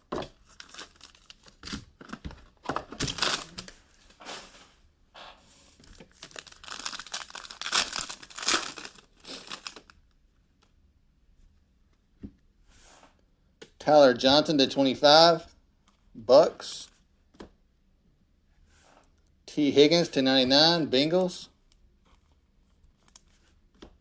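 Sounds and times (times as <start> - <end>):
plastic wrapping tearing and crinkling: 0.4 - 1.9, 2.9 - 4.2, 5.8 - 10.0.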